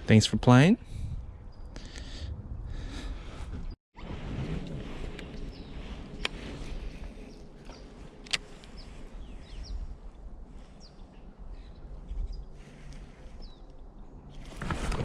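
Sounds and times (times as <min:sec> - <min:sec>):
small birds chirping: 0:05.2 - 0:14.3.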